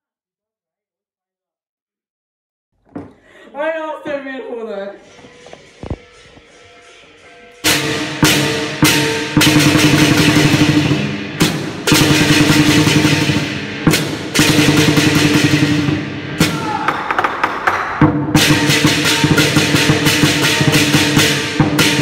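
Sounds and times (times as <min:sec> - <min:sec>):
drum and cymbal percussion music: 0:05.1 - 0:22.0.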